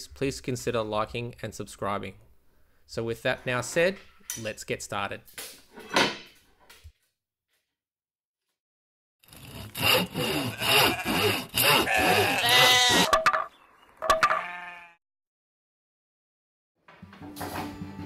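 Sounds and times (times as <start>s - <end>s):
saw cutting wood: 9.2s - 13.1s.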